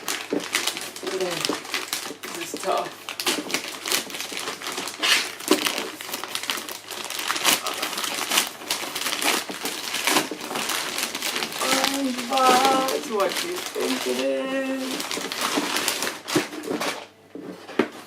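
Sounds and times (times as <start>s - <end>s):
package wrapping crinkling: 0.0s - 18.0s.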